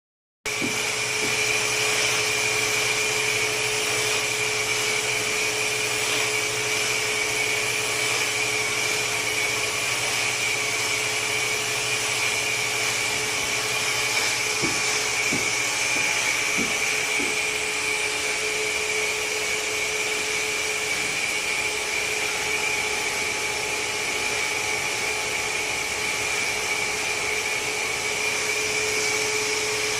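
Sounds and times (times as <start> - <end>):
spraying machine whirring hiss: 0.5 - 29.9.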